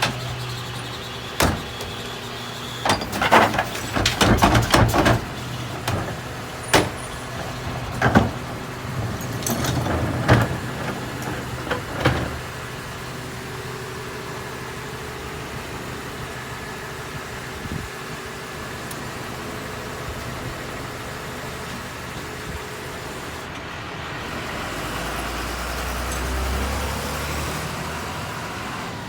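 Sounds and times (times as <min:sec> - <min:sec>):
metal clanks and knocks: 0:00.0 - 0:12.6
garbage truck running: 0:00.0 - 0:29.0.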